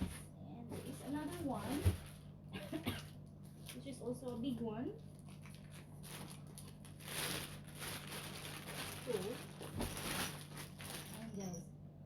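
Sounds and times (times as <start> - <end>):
packaging rustling: 5.1 - 11.4.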